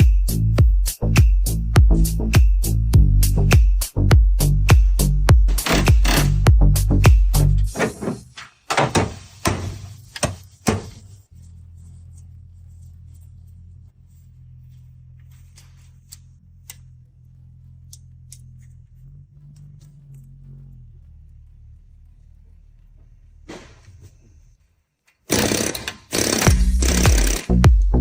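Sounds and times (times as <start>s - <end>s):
low hum: 11.0s - 24.9s.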